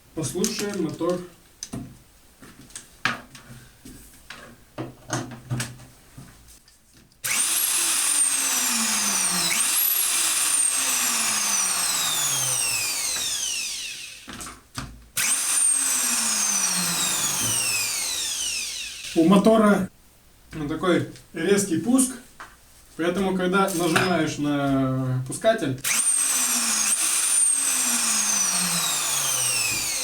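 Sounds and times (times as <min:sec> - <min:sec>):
electric router whining: 0:07.2 - 0:14.3, 0:15.2 - 0:19.4, 0:25.8 - 0:30.0.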